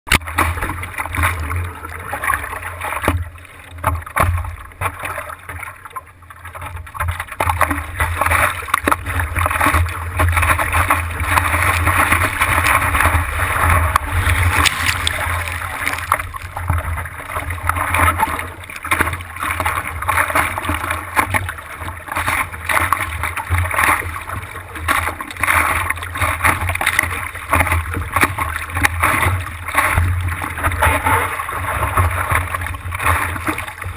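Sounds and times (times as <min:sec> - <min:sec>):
low rumble: 0:00.2 - 0:20.9
heavy ocean surf breaking: 0:08.0 - 0:27.0.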